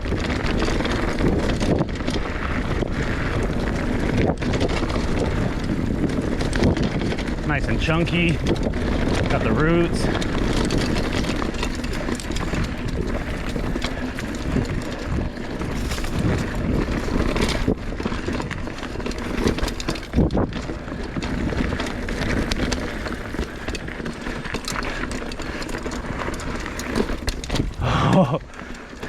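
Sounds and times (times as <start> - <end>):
bike tyres rumbling on trail: 0.0 - 29.0
bike clattering and knocking: 6.1 - 29.0.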